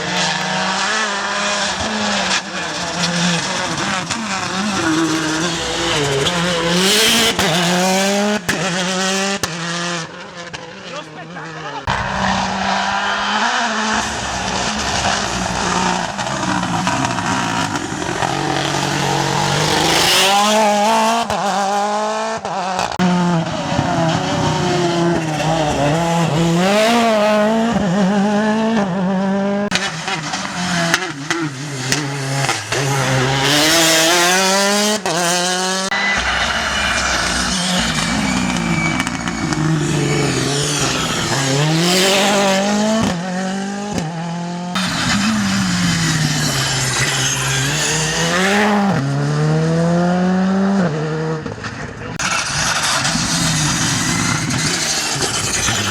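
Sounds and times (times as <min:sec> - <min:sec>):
rally car engines revving: 0:00.0 - 0:55.9
tyre squeal: 0:11.9 - 0:21.7, 0:30.7 - 0:43.2, 0:44.8 - 0:49.0, 0:52.2 - 0:55.9.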